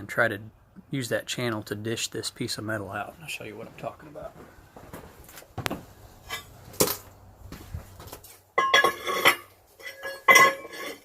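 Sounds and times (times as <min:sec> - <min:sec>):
steel clanking against an anvil: 0:08.6 - 0:11.0.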